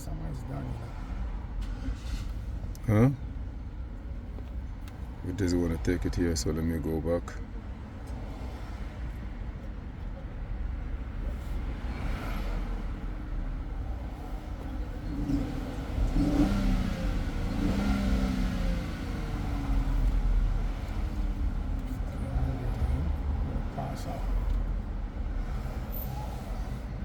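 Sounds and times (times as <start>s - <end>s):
vehicle engine rumbling: 0.0s - 27.0s.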